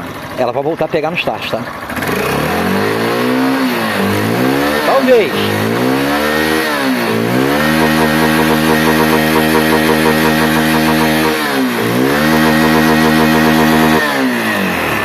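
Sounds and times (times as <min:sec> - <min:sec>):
motorcycle engine revving: 0:01.6 - 0:15.0.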